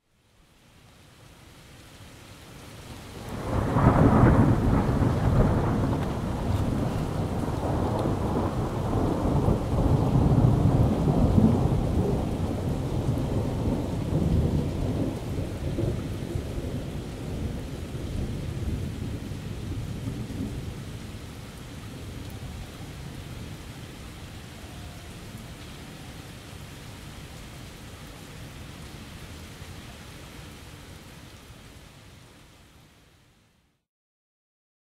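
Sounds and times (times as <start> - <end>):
steady rain: 0.0 - 33.9
thunder rumble: 3.2 - 20.8.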